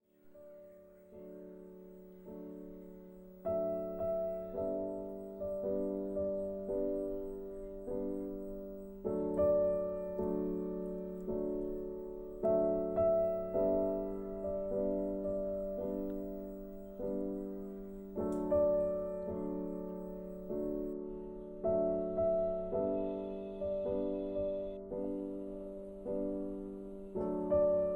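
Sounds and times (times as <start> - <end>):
slow gentle piano melody: 0.0 - 27.9.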